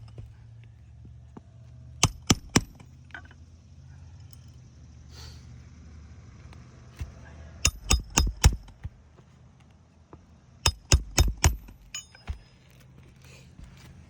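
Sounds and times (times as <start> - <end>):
hammer striking nails with metallic ring: 2.0 - 2.9, 7.0 - 8.9, 10.6 - 12.5.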